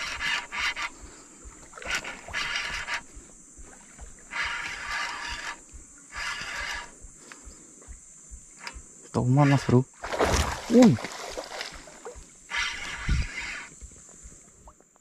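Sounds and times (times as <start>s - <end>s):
fish thrashing water splashing: 10.0s - 13.8s.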